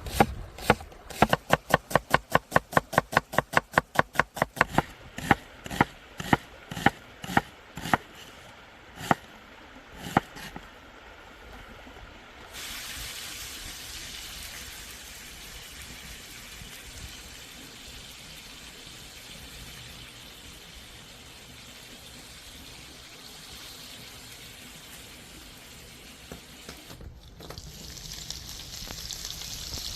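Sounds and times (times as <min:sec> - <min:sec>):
knife chopping on a cutting board: 0:00.0 - 0:08.1, 0:09.0 - 0:09.2
steady hiss: 0:12.4 - 0:29.9.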